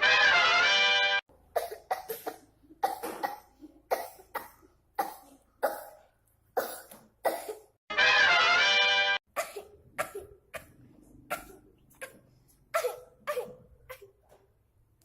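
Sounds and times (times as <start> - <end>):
child coughing: 1.5 - 7.8, 9.3 - 14.2.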